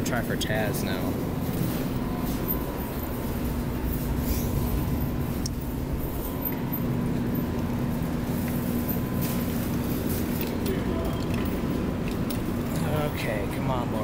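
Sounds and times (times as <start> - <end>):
electrical hum: 0.0 - 14.0
background rumble: 1.9 - 9.2.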